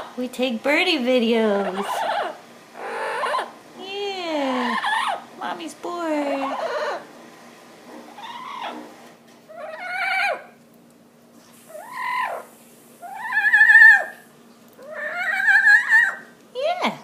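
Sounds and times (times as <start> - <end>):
parrot calling: 1.6 - 3.6, 4.5 - 5.3, 6.3 - 7.1, 8.0 - 10.6, 11.7 - 14.2, 14.8 - 16.3.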